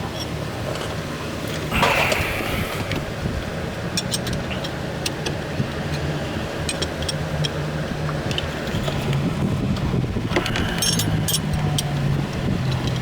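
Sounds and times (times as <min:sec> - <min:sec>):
low rumble with hum: 0:01.4 - 0:13.0.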